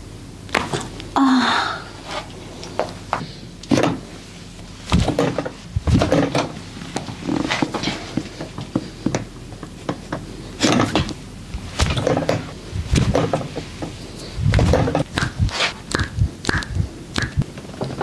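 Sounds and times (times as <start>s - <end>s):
rustling of body handling: 4.1s - 15.8s
dull thumps: 4.9s - 6.6s, 10.6s - 17.5s
joints cracking and popping: 14.4s - 18.0s.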